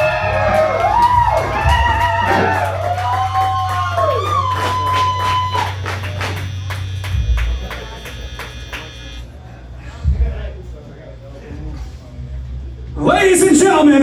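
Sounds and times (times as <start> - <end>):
drum and cymbal hits: 0.0 - 2.8, 5.8 - 8.2
low bass note: 6.2 - 8.4.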